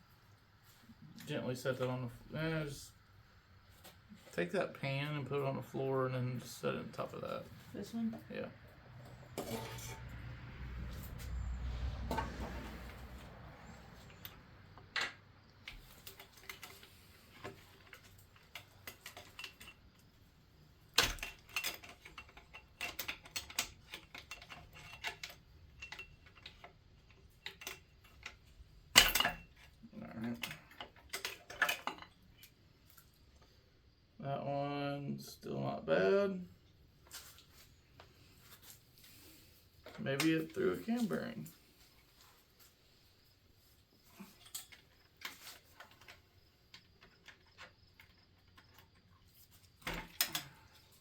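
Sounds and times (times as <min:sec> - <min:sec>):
metal engine parts clinking: 0:09.0 - 0:10.2, 0:12.1 - 0:32.6, 0:44.0 - 0:51.0.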